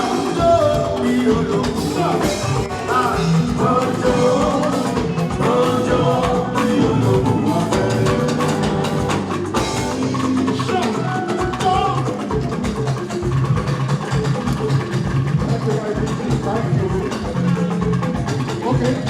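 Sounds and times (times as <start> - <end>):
person singing: 0.0 - 12.2
live band dance music: 0.0 - 19.0.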